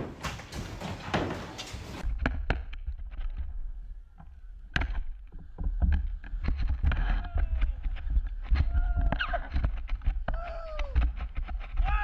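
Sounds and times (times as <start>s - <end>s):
debris knocking and rattling: 0.0s - 3.5s.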